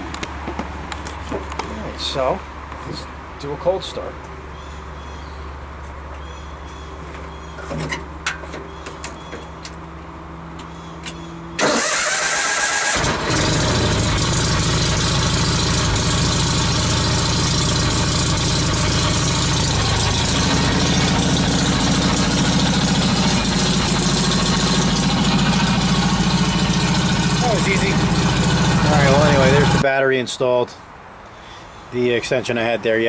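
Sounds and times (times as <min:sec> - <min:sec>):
small engine running: 0:11.6 - 0:29.8
starter motor cranking: 0:11.6 - 0:29.8.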